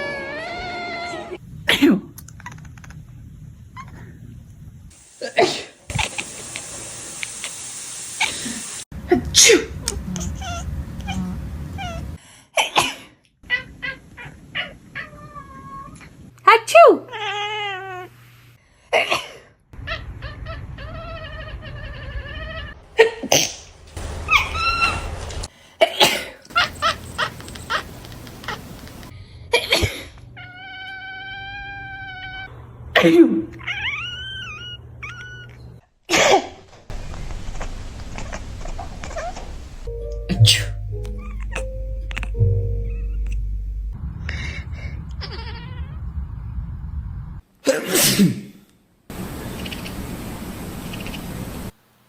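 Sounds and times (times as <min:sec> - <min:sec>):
cat chirping meows: 0:38.2 - 0:39.9
person sneezing: 0:47.7 - 0:48.6.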